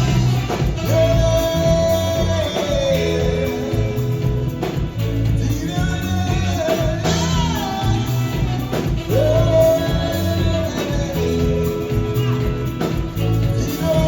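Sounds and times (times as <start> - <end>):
guitar: 0.0 - 14.0
person singing: 0.0 - 14.0
repeating bass line: 0.0 - 14.0.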